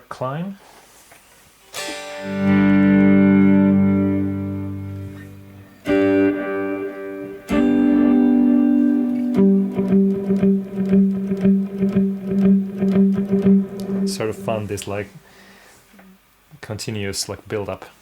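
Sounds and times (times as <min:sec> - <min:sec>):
electric guitar chords with reverb: 0:01.8 - 0:14.7.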